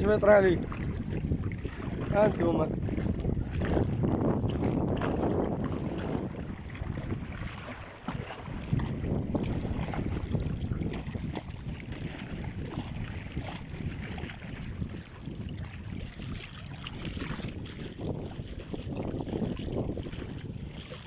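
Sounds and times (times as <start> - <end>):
water sloshing around boat: 0.0 - 21.0
wind buffeting microphone: 0.0 - 21.0.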